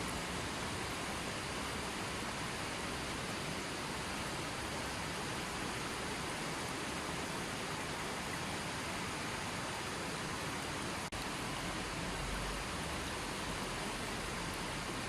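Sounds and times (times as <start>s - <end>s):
running water rushing: 0.0s - 15.0s.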